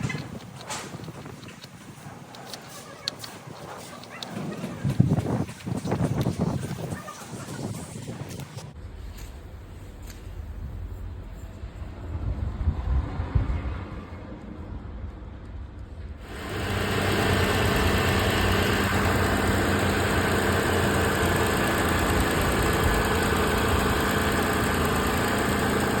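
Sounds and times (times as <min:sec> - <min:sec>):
car engine running: 0:16.2 - 0:26.0.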